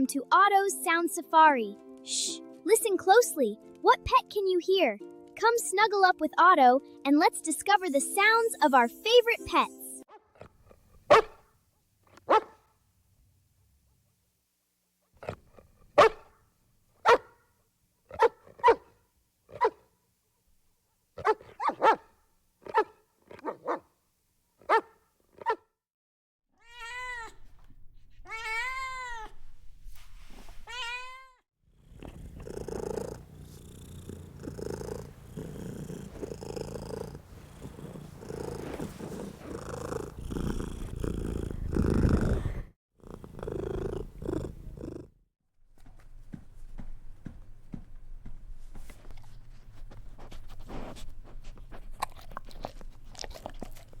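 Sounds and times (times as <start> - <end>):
dog barking: 11.1 - 11.5, 12.1 - 12.7, 16.0 - 16.4, 17.0 - 17.5, 18.1 - 19.9, 21.2 - 23.9, 24.6 - 25.7
cat meowing: 26.6 - 27.5, 28.2 - 29.4, 30.7 - 31.4
cat purring: 31.7 - 45.2.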